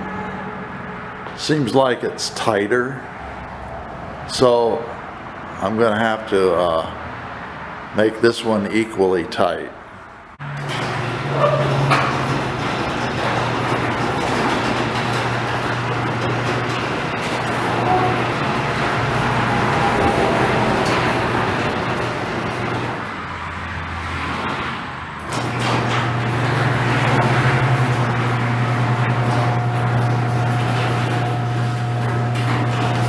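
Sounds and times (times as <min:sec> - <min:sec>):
door rumbling along tracks: 0:00.0 - 0:33.0
garage door opener motor humming: 0:10.4 - 0:33.0.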